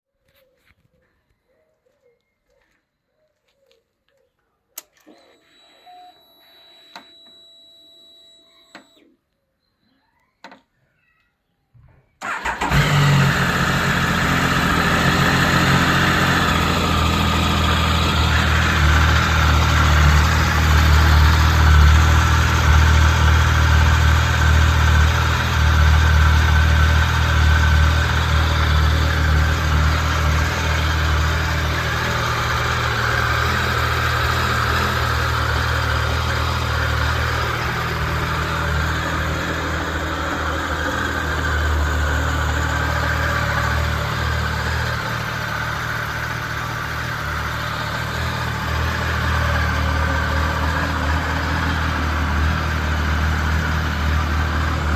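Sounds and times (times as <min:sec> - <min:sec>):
motorcycle engine idling: 0:12.2 - 0:54.9.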